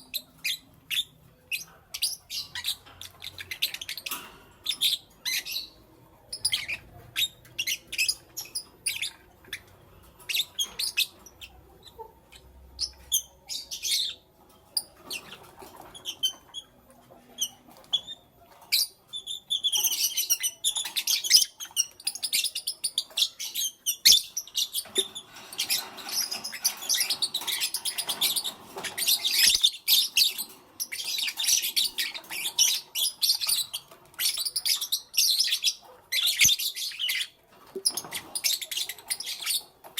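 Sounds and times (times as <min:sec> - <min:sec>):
lovebirds chirping: 0:00.0 - 0:39.9.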